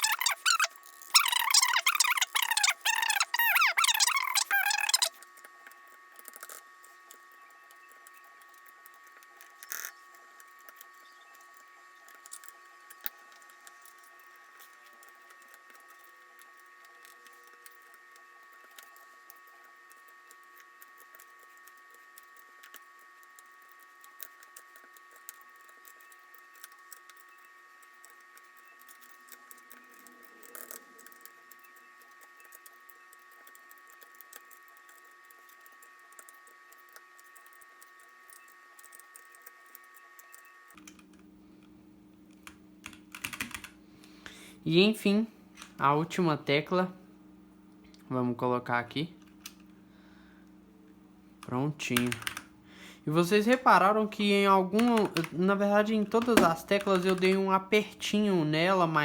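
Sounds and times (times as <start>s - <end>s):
plastic keycaps clicking: 54.8s - 57.4s.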